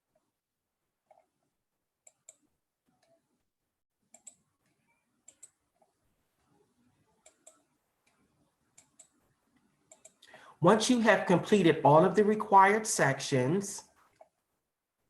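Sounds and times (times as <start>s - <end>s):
computer mouse clicks: 2.0s - 3.2s, 4.1s - 6.0s, 7.1s - 10.4s.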